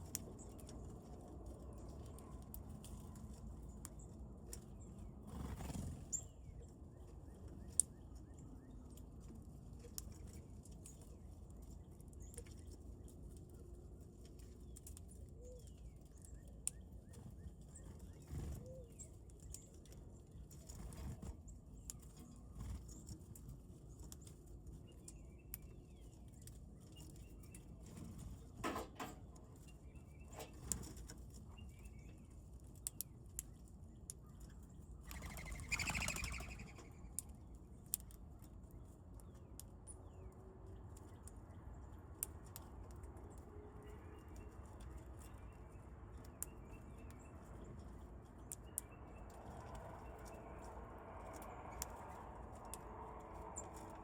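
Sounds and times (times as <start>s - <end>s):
faint high bird chirps: 34.3s - 37.2s
bird wings fluttering: 35.1s - 36.7s
low outdoor rumble: 36.4s - 54.0s.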